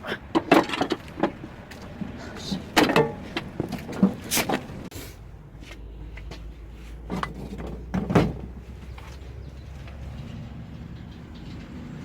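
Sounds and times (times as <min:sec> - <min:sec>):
sharp clunks under vehicle: 0:00.3 - 0:01.4, 0:02.0 - 0:04.7.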